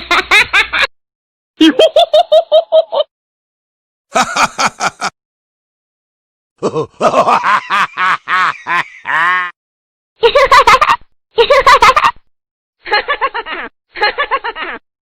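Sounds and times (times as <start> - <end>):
person laughing: 1.6 - 3.1, 4.1 - 5.2, 6.6 - 9.6.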